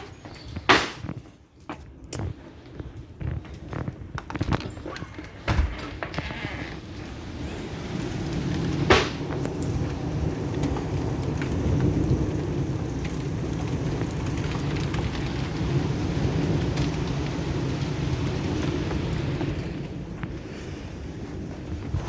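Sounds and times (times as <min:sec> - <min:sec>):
heavy rain pouring: 0:04.5 - 0:22.0
deep thunder rumble: 0:06.9 - 0:22.0.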